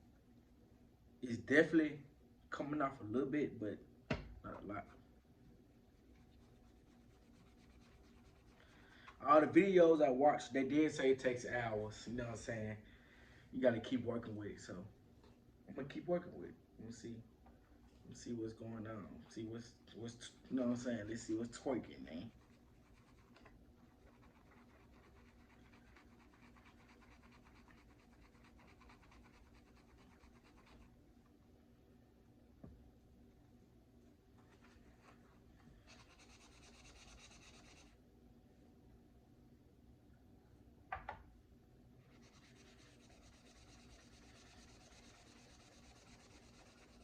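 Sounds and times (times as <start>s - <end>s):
rapid scrubbing on metal: 22.3s - 30.9s, 35.9s - 38.0s, 42.1s - 47.0s
light knock: 40.9s - 41.3s.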